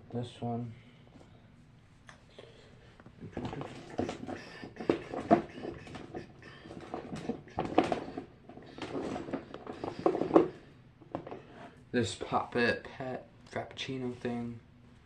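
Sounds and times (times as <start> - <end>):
plastic toys clicking and rustling: 3.4 - 10.5.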